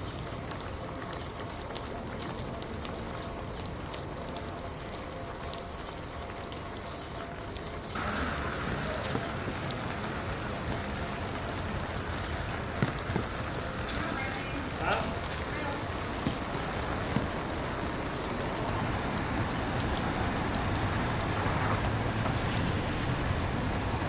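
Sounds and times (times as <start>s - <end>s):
steady rain falling: 0.0s - 24.0s
drops ticking on hard surfaces: 8.0s - 24.0s.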